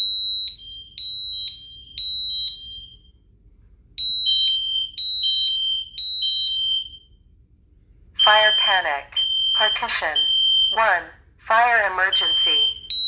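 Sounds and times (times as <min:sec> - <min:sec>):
high electronic alarm beeps: 0:00.0 - 0:03.1, 0:04.0 - 0:07.1, 0:08.2 - 0:10.9, 0:12.1 - 0:13.0.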